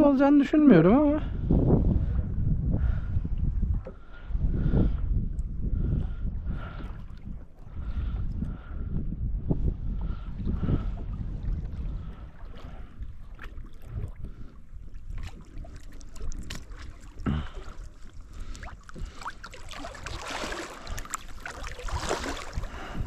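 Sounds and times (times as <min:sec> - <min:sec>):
wind rumble on microphone: 0:00.0 - 0:23.0
water lapping around canoe: 0:01.5 - 0:23.0
water splashing: 0:11.2 - 0:23.0.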